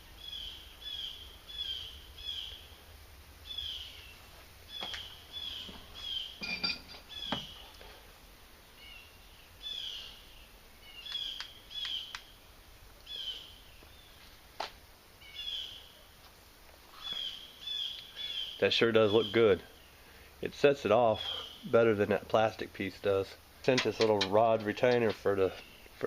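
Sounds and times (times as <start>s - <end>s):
small bird chirping: 0.2s - 2.8s, 3.4s - 7.8s, 8.7s - 12.4s, 13.0s - 14.3s, 15.2s - 16.2s, 16.9s - 20.0s
sharp clicks: 11.1s - 12.3s.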